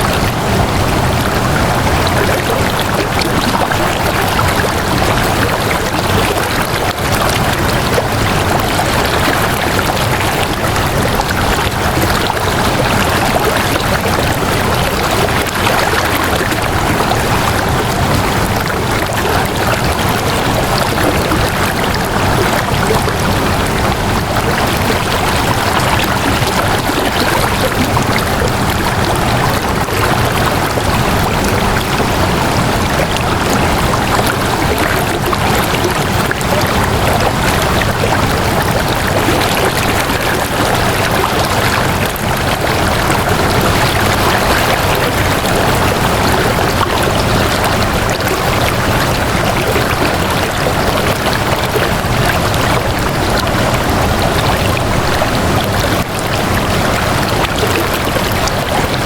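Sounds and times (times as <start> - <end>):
flowing water rushing: 0.0 - 59.0.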